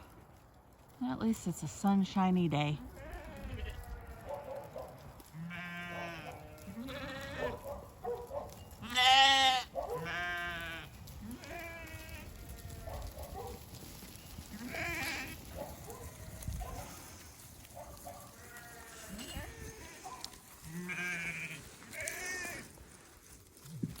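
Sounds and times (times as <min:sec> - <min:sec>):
ewes bleating: 0:05.4 - 0:07.6, 0:08.8 - 0:12.7, 0:14.6 - 0:15.4, 0:20.7 - 0:22.6.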